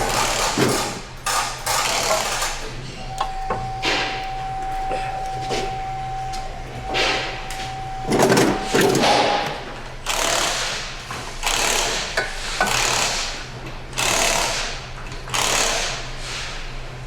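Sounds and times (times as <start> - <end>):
power tool running: 1.7 - 12.1.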